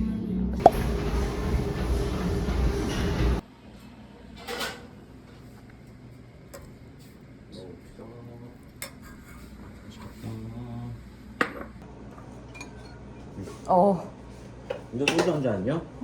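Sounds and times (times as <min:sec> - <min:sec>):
dishes and cutlery clinking: 0:04.4 - 0:04.9, 0:12.4 - 0:13.0.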